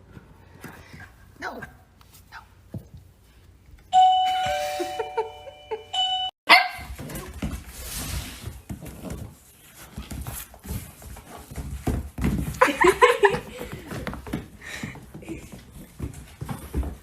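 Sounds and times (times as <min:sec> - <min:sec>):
two-note doorbell chime: 0:04.0 - 0:06.4
dog barking: 0:06.5 - 0:06.9.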